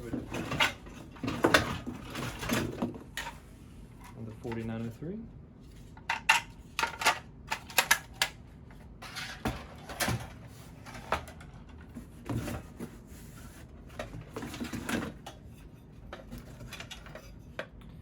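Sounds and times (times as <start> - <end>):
plastic parts clicking and knocking: 6.0 - 8.4.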